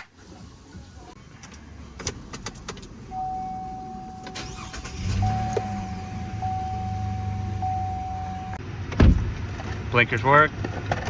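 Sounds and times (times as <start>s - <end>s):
electronic warning tone: 3.2s - 8.6s
engine starting and idling: 4.2s - 7.9s.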